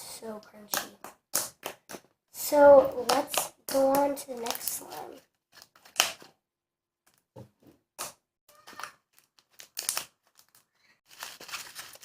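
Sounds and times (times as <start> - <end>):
crinkling and crackling: 8.5 - 12.0.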